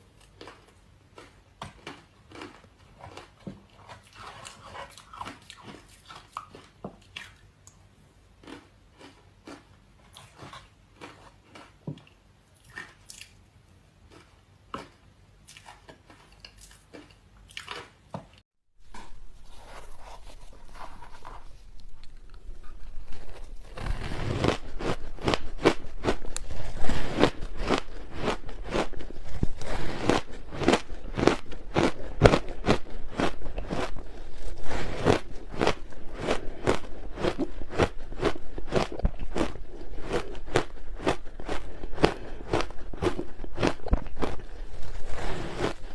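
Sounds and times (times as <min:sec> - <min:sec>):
chewing hard ice crunching: 0:21.8 - 0:45.9.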